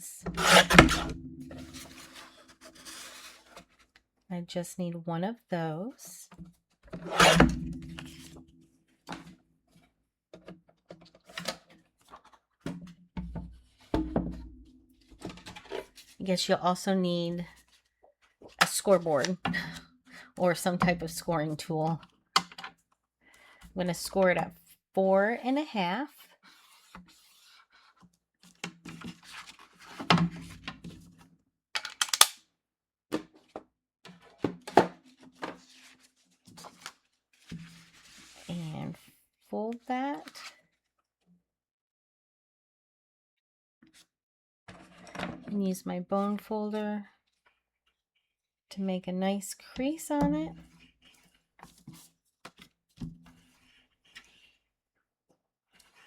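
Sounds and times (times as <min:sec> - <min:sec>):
scoring tool scraping: 0:00.2 - 0:03.6
loud thump with low ring: 0:00.7 - 0:02.0, 0:07.2 - 0:08.4
paper rustling: 0:01.6 - 0:03.9, 0:35.1 - 0:38.5.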